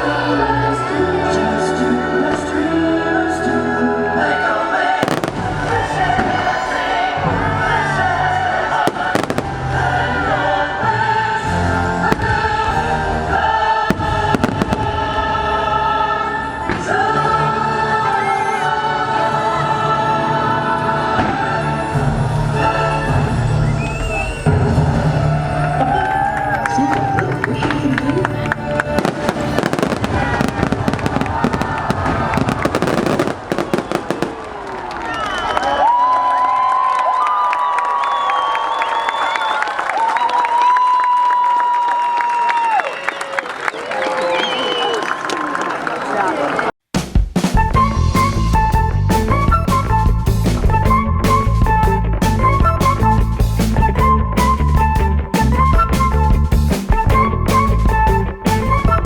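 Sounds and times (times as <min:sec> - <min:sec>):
loud choral music: 0:00.0 - 0:35.1, 0:47.6 - 0:59.0
crowd cheering and whistling: 0:04.2 - 0:46.8, 0:47.6 - 0:59.0
fireworks bursting: 0:04.9 - 0:07.0, 0:08.7 - 0:10.4, 0:12.0 - 0:15.3, 0:28.9 - 0:35.8.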